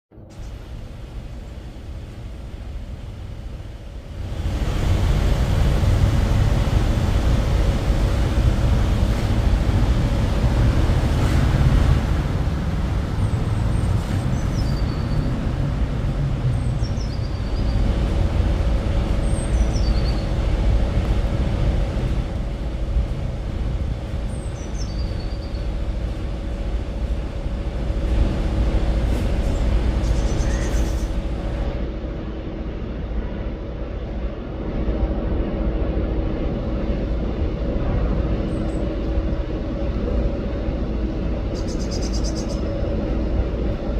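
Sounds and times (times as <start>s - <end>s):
faint hum: 0.1s - 43.9s
road traffic rumble: 0.2s - 43.9s
small bird calling: 30.0s - 31.1s.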